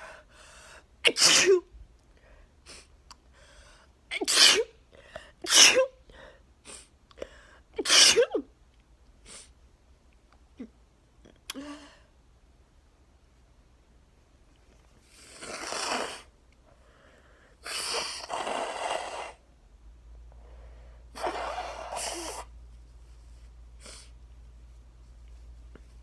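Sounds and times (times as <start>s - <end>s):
woman sneezing: 1.0s - 1.7s, 4.1s - 4.8s, 5.4s - 6.0s, 7.8s - 8.5s
woman blowing her nose: 1.1s - 1.6s, 4.2s - 4.7s, 5.5s - 5.9s, 7.8s - 8.3s, 15.1s - 16.3s, 17.6s - 19.4s, 21.1s - 22.5s.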